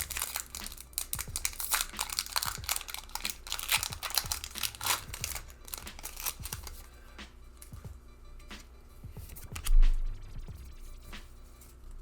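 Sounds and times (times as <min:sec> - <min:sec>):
foil wrapper tearing and crinkling: 0:00.0 - 0:06.9.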